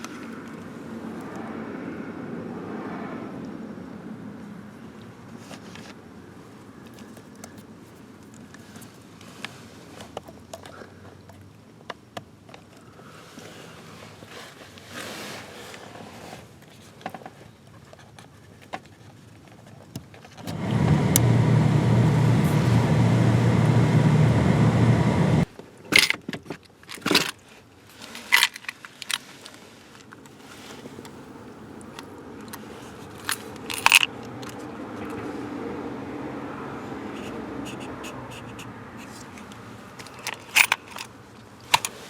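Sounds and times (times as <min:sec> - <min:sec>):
sharp clicks and clatter: 0:20.4 - 0:25.5
heater blower fan running: 0:20.5 - 0:25.5.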